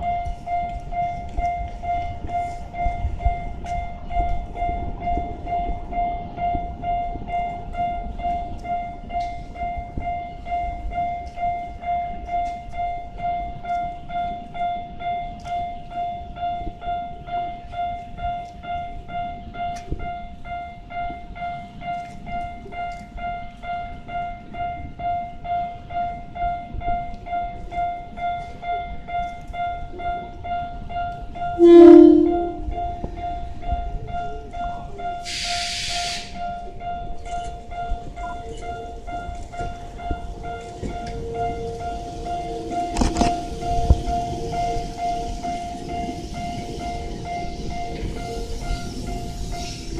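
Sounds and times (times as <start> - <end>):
level crossing alarm ringing: 0.0 - 49.9
train horn blast: 31.6 - 32.8.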